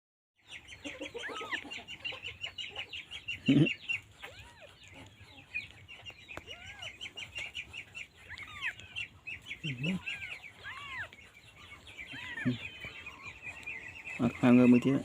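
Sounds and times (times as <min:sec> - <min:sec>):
kittens mewing: 0:03.3 - 0:05.5, 0:06.2 - 0:07.5, 0:08.2 - 0:13.8.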